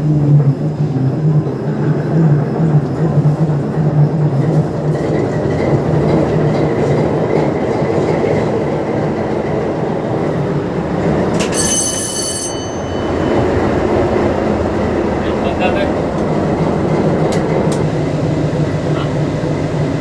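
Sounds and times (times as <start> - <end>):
diesel locomotive engine rumbling: 0.0 - 20.0
high tone: 11.4 - 13.8.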